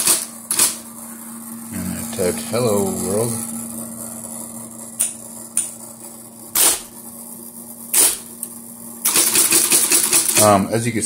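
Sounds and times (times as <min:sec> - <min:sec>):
steady low hum: 0:00.0 - 0:11.0
typewriter clacks: 0:09.1 - 0:10.6.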